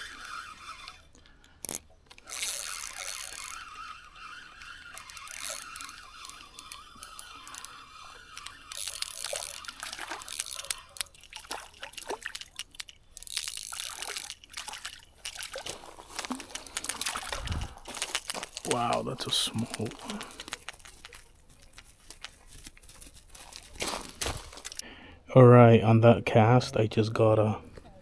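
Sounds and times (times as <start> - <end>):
water splashing and dripping: 6.5 - 21.2.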